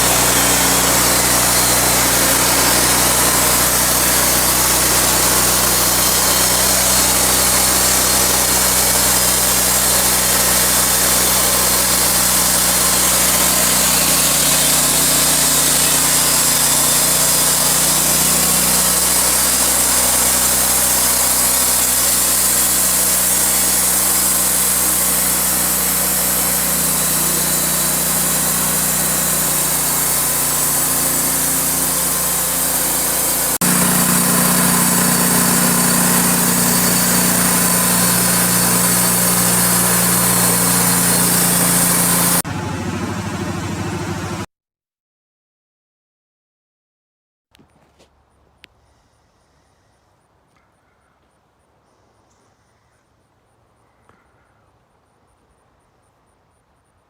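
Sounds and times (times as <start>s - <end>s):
saw cutting log hiss: 0.0s - 42.4s
sawmill engine running: 0.0s - 44.5s.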